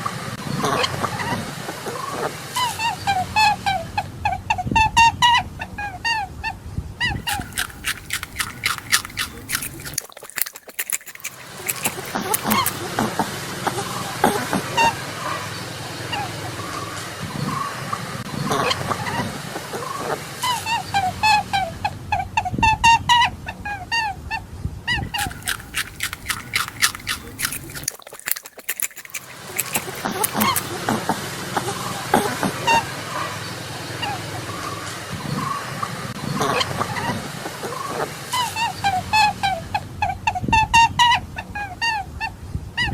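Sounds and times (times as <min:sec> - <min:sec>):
rabbit chewing crunchy food: 0:07.2 - 0:12.9, 0:25.0 - 0:30.8.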